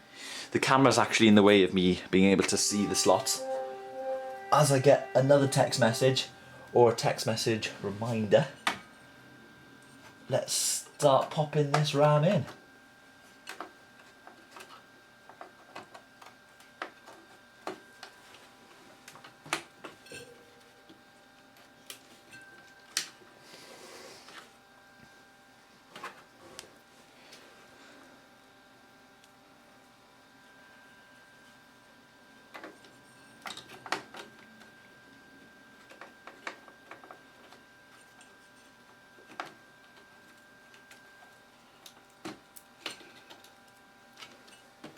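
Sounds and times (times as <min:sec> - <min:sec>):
faint steady high tone: 0:02.4 - 0:09.0.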